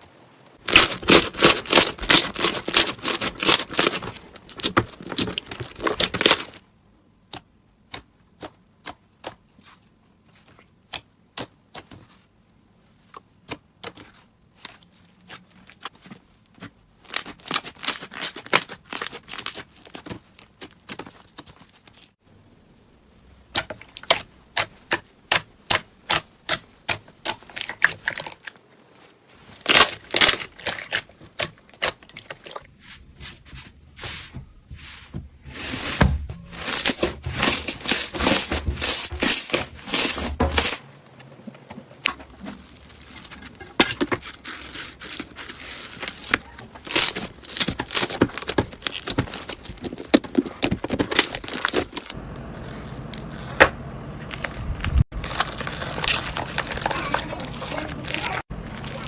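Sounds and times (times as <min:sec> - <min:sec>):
slime crackling and popping: 0:00.6 - 0:06.6, 0:54.2 - 0:59.0.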